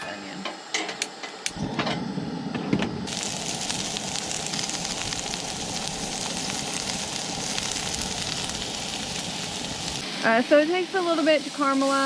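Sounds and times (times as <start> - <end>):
onions sizzling in hot oil: 3.0 - 12.0.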